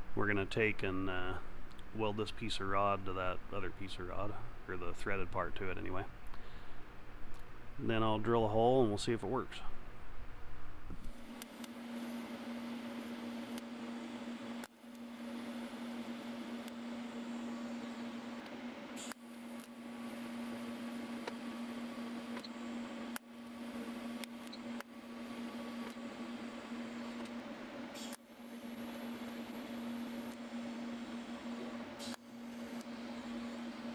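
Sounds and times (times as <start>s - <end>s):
welder arc crackling: 0.0s - 12.2s
electrical hum: 0.0s - 33.9s.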